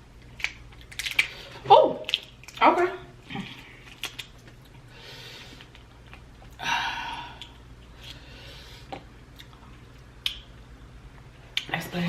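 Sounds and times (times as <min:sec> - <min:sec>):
person breathing while eating: 0:04.9 - 0:05.8, 0:06.5 - 0:09.1.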